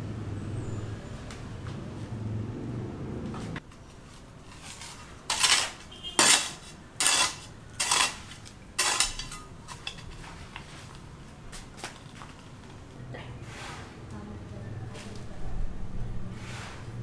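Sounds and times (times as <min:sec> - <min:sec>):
hard objects clinking: 0:04.5 - 0:12.7.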